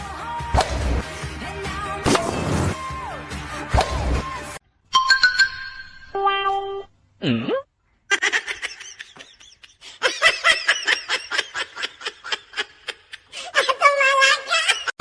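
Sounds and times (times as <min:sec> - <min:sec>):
person laughing hard: 0:08.1 - 0:15.0.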